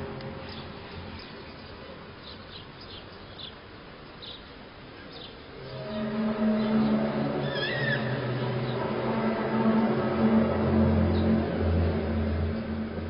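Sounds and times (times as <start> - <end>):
low hum with pitched tones: 0.0 - 2.8, 5.5 - 13.0
wavering high call: 5.6 - 11.6.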